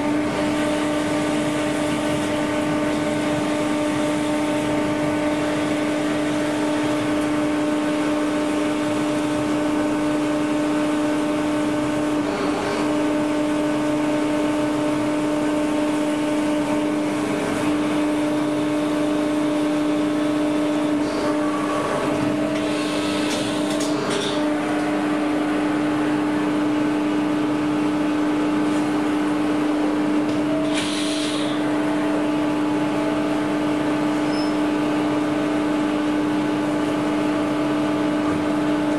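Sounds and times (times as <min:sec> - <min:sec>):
lathe motors humming: 0:00.0 - 0:38.9
brief hissing bursts: 0:30.7 - 0:31.6.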